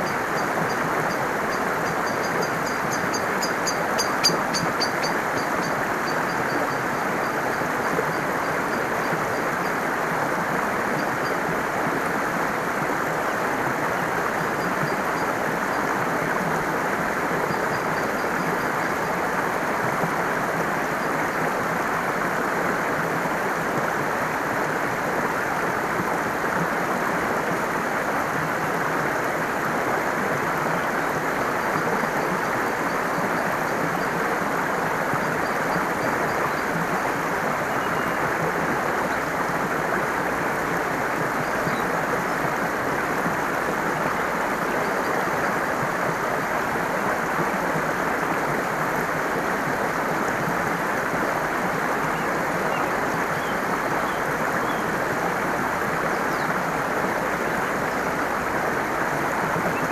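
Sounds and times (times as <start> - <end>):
stream water flowing: 0.0 - 59.9.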